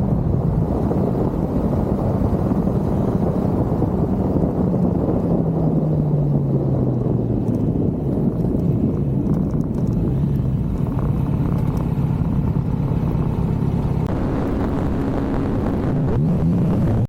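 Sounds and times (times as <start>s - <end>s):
motorcycle engine running: 0.0s - 17.0s
wind rush on microphone: 0.0s - 17.0s.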